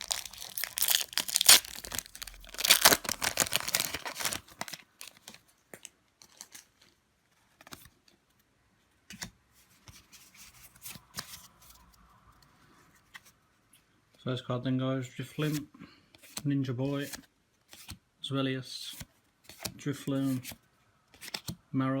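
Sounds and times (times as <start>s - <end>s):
foil wrapper tearing and crinkling: 0.0s - 5.2s.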